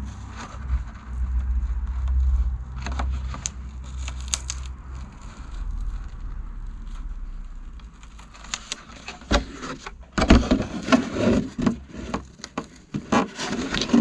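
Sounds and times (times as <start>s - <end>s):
masking tape peeling: 3.0s - 11.1s
plastic crackling and clicks: 3.3s - 4.8s.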